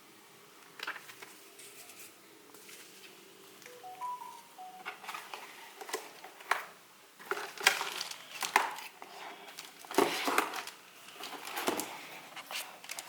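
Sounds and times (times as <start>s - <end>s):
packaging rustling and crinkling: 5.0s - 13.0s.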